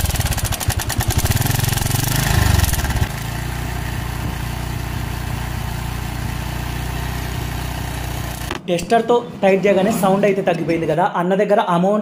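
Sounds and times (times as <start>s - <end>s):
motorcycle engine idling: 0.0s - 8.6s.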